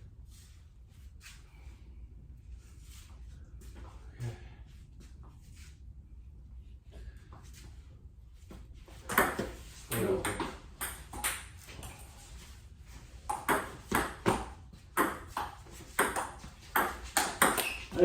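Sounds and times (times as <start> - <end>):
ping pong ball hits: 9.1 - 12.0, 13.2 - 18.0.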